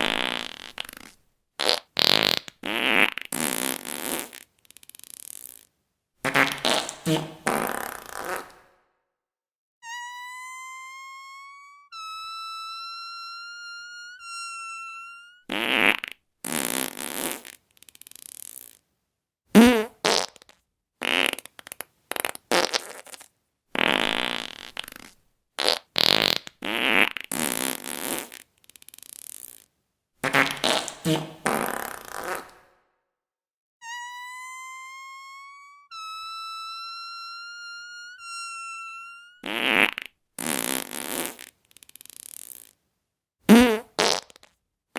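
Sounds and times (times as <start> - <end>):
fart sound effects: 0.0 - 8.8, 15.2 - 18.8, 19.6 - 29.6, 30.2 - 32.8, 37.8 - 42.8, 43.5 - 44.5
high squeaky whistling tone: 6.5 - 8.5, 9.8 - 15.5, 33.8 - 39.5.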